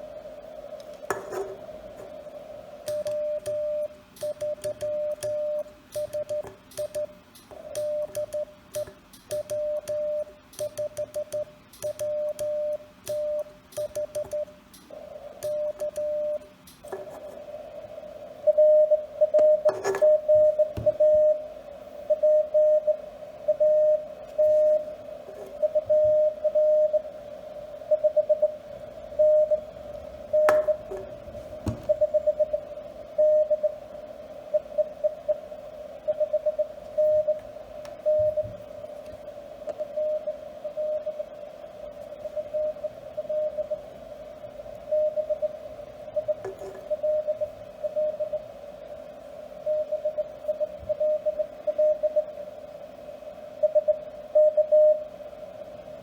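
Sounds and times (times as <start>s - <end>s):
faint radio hiss: 0.0s - 56.0s
telegraph key contacts clicking: 2.8s - 17.1s
morse code beeps: 2.9s - 14.6s, 15.4s - 17.1s, 18.5s - 21.5s, 22.1s - 27.0s, 38.0s - 38.6s.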